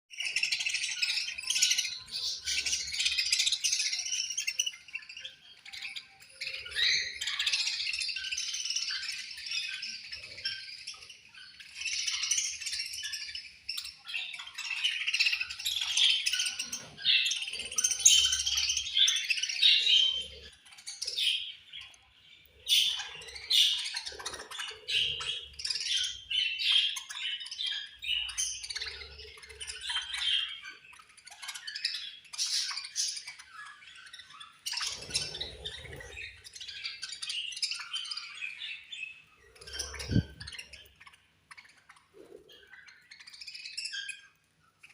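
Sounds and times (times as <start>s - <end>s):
budgerigars chirping: 0.1s - 44.9s.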